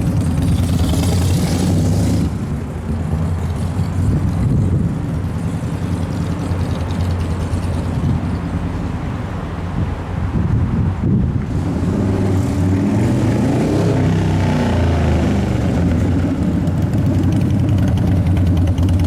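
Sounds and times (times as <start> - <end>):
motorcycle engine running: 0.0 - 9.7, 14.3 - 19.0.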